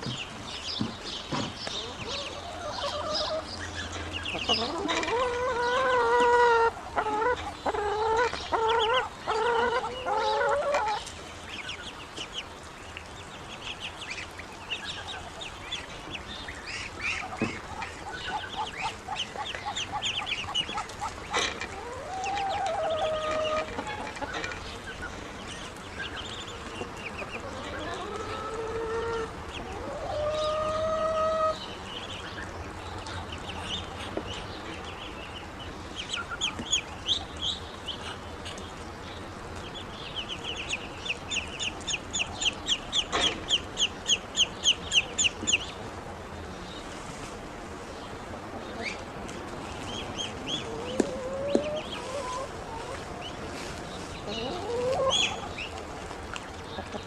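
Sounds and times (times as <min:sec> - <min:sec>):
ducklings calling: 0:00.0 - 0:45.9, 0:48.0 - 0:57.0
ducklings peeping: 0:00.0 - 0:57.0.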